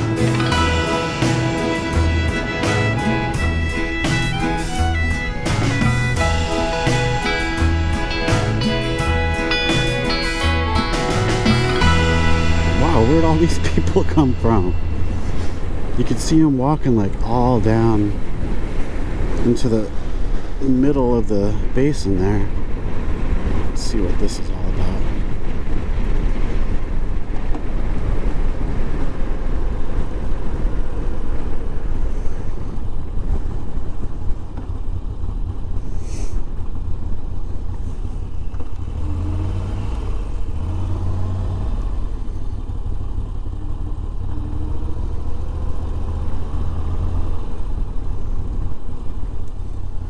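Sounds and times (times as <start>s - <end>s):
motorcycle engine running: 0.0s - 16.0s, 36.5s - 50.0s.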